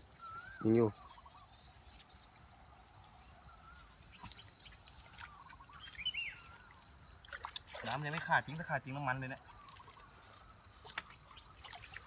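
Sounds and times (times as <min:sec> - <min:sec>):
faint bird calls: 0:00.0 - 0:02.0, 0:03.3 - 0:06.9, 0:09.1 - 0:12.0
insects chirring: 0:00.0 - 0:12.0.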